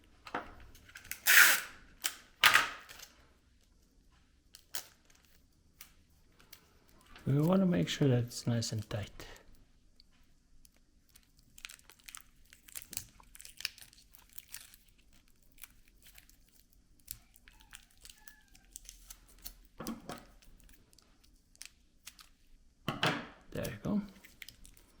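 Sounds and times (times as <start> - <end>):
plastic wrapping crinkling: 4.5 - 9.3, 10.6 - 22.6, 23.5 - 25.0.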